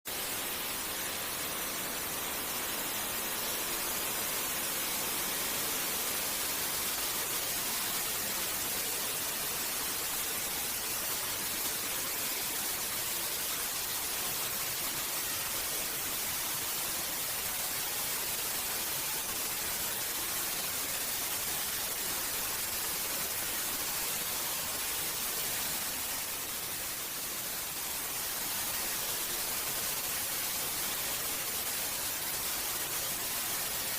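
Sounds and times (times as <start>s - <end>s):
white noise hiss: 0.1s - 33.9s.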